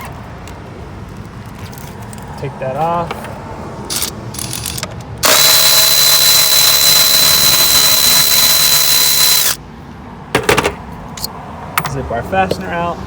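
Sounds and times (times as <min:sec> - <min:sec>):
power drill spinning: 0:05.2 - 0:09.6.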